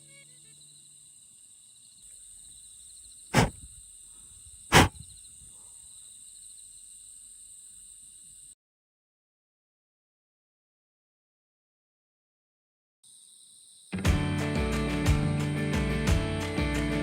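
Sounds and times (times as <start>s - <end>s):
insects chirping trill: 0.0s - 8.6s, 13.0s - 14.0s.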